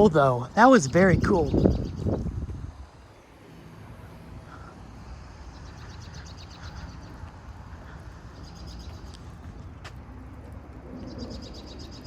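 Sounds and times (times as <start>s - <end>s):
wind rumbling on microphone: 0.0s - 12.0s
small bird chirping trill: 0.4s - 2.4s.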